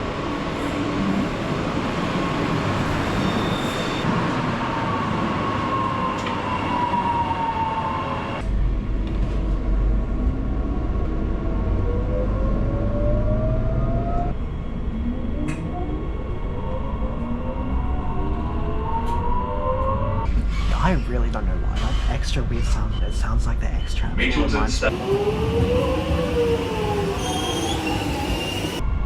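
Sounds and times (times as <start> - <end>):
train rumbling: 0.0 - 29.0.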